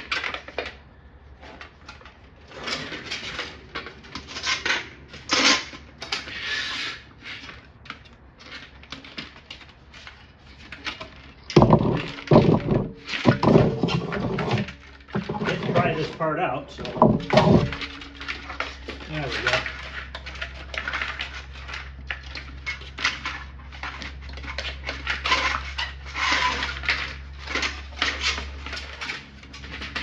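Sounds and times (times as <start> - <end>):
rustling and scraping: 0.0 - 30.0
heavy clunks and knocks: 11.5 - 18.0.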